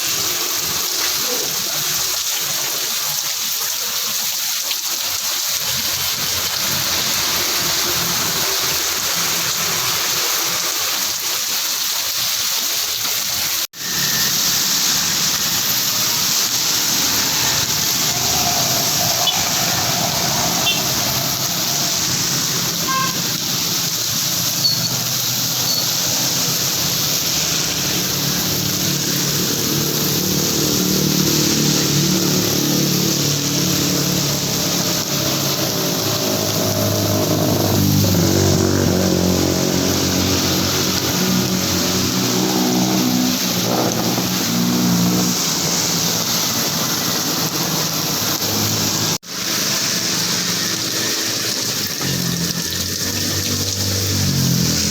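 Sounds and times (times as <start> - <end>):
heavy rain: 0.0 - 54.9.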